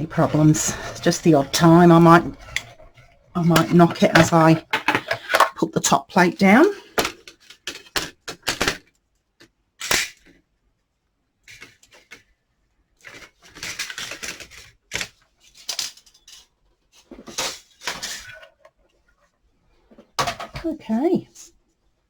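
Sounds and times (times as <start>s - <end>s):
rollers scraping as machine is cranked: 0.0s - 5.6s
plastic plates clicking and knocking: 0.0s - 8.9s, 20.0s - 20.8s.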